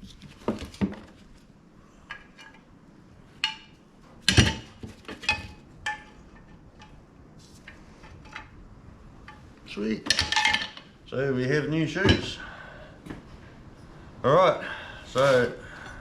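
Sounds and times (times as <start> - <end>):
metal brake parts clinking: 10.1 - 10.9.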